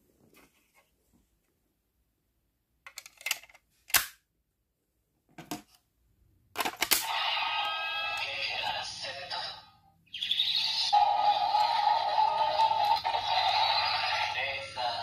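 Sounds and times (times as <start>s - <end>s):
plastic toy clicks and snaps: 2.9s - 4.2s, 6.6s - 7.1s
toy electronic synth tones: 7.1s - 8.9s, 10.1s - 14.9s.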